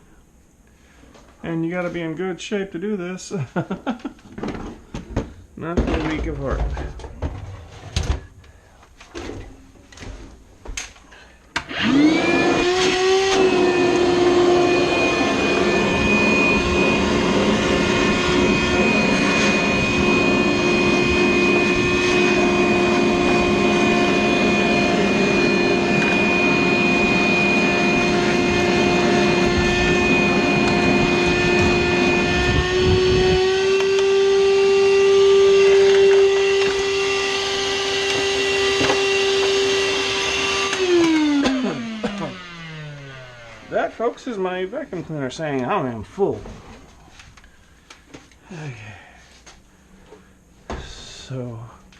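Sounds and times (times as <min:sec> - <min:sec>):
vacuum cleaner motor whine: 0:11.6 - 0:44.5.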